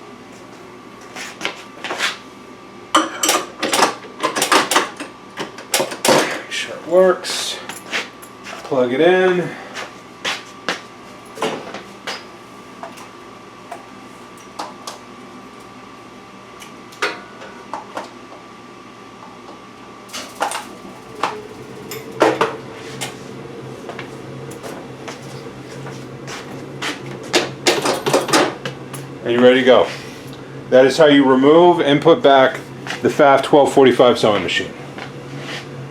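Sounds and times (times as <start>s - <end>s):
sewing machine motor hum: 20.1s - 23.4s.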